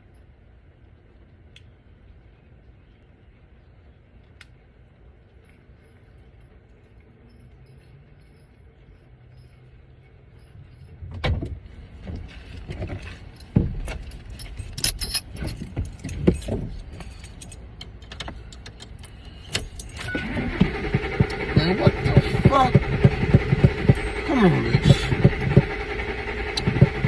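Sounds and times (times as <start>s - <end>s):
keys jangling: 13.0s - 20.2s
low steady hum: 19.0s - 27.0s.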